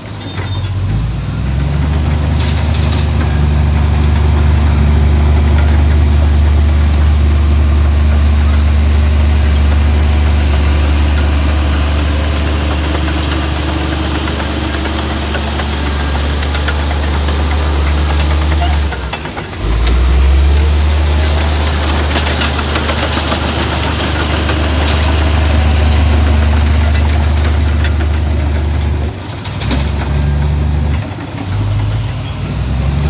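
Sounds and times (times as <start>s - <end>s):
heavy diesel engine running: 0.0s - 33.0s.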